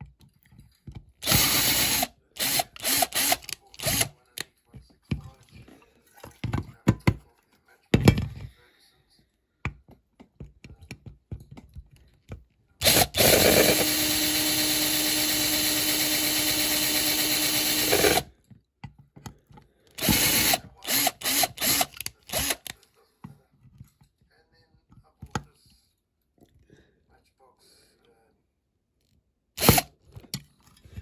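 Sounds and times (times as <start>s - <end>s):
small electric drill running: 1.2s - 4.1s, 12.8s - 18.3s, 20.0s - 22.7s, 29.6s - 29.9s.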